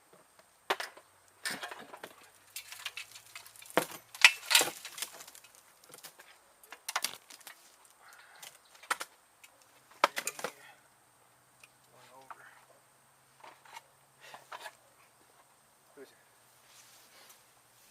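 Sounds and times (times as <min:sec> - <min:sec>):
clatter of knocks and scrapes: 0:13.4 - 0:14.8.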